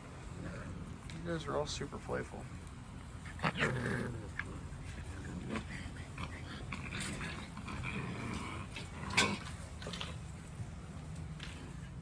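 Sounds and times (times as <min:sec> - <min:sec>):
puppies scuffling and snapping: 0:04.2 - 0:12.0.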